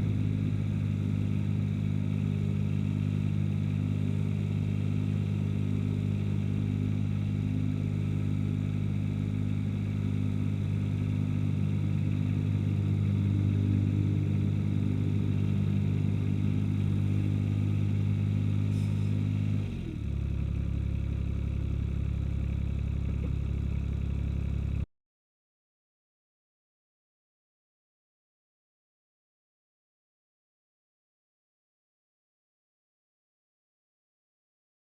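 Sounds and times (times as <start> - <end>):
mower engine running: 0.0 - 24.8.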